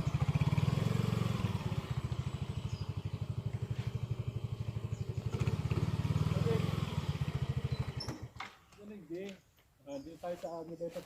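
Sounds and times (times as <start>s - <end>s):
motorcycle engine running: 0.0s - 8.4s.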